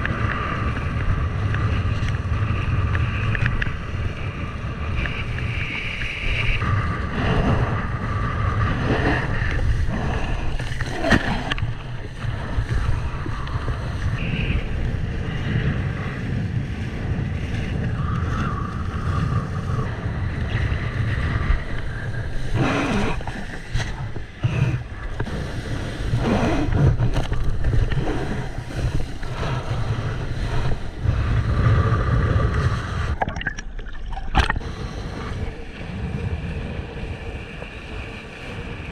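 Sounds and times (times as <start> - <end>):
constant low rumble: 0.0 - 38.9
wind buffeting microphone: 0.0 - 38.9
rushing splashing water: 33.0 - 34.6.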